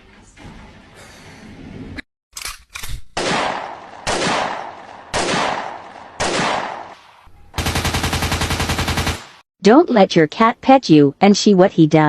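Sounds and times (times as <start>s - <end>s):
machine-gun fire: 3.2s - 7.0s, 7.6s - 9.4s
gunshots with echo: 3.2s - 9.4s.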